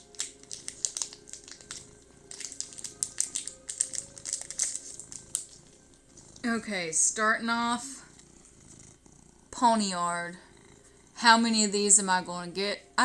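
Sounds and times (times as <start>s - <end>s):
foil wrapper crinkling: 0.0s - 5.7s.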